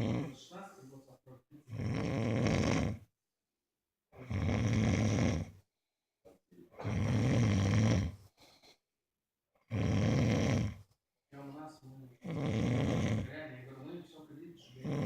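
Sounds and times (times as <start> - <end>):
man snoring loudly: 0.0 - 0.4, 1.7 - 3.1, 4.2 - 5.6, 6.8 - 8.2, 9.7 - 10.8, 12.2 - 13.3, 14.8 - 15.0.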